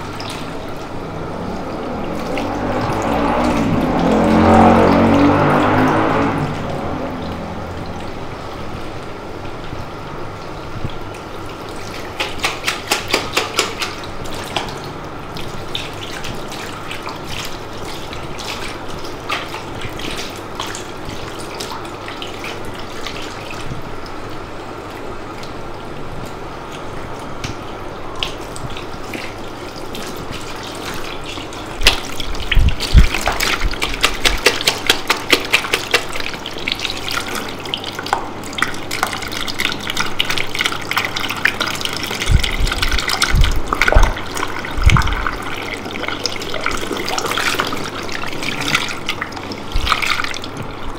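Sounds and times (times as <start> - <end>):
tap water running into basin: 0.0 - 50.9
water splashing: 0.0 - 50.9.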